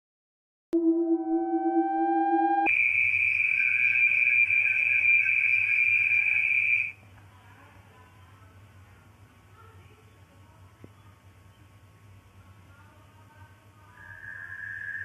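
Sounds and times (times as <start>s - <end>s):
steady low tone: 0.7s - 2.7s
high-pitched whine: 0.8s - 5.8s
faint low hum: 7.0s - 15.0s.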